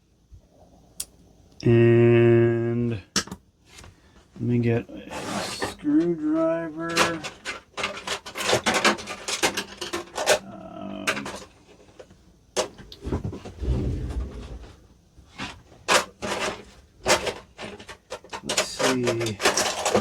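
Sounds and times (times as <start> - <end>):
hand tools clattering on wood: 6.8 - 10.4, 15.4 - 20.0
low rumble of handling: 12.8 - 15.6.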